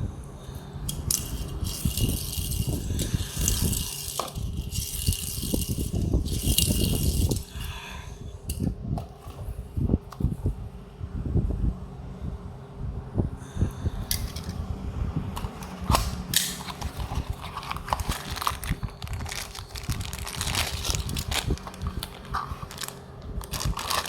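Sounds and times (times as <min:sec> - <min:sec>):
plastic packaging crinkling: 0:16.4 - 0:24.0.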